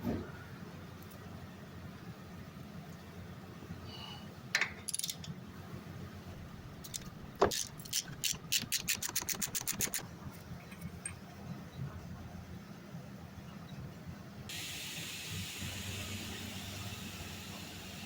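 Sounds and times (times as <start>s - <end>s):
metal tools clinking: 4.8s - 5.3s
hand ratchet clicking: 6.8s - 10.0s.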